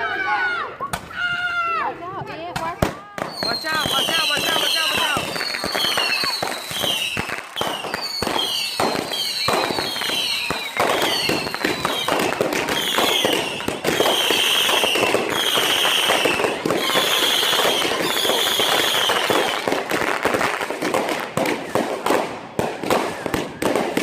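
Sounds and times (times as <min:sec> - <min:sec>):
fireworks crackling: 0:02.2 - 0:24.0
firework whistles: 0:03.3 - 0:19.8.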